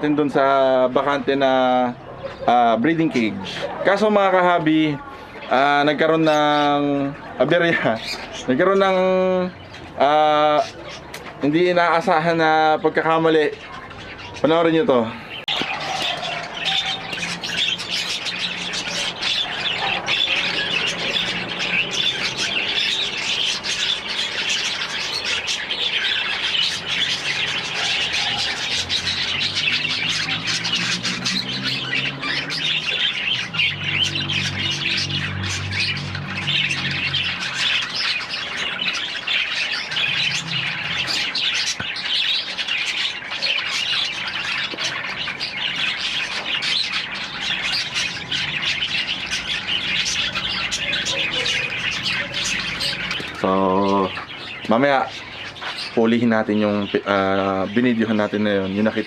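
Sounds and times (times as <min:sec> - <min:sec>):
birds chattering and squawking: 0:00.0 - 0:59.0
lower bird calls: 0:13.6 - 0:59.0.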